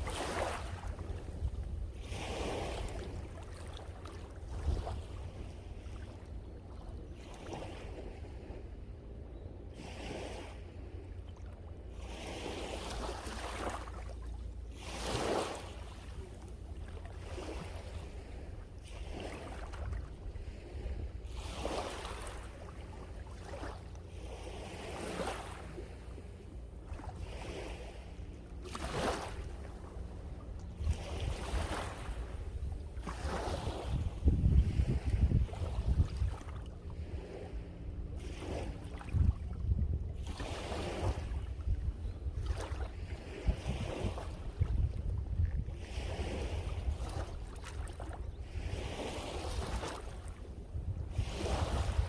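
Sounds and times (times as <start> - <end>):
sea waves breaking: 0.0 - 9.0, 9.8 - 52.0
wind rumble on microphone: 0.0 - 52.0.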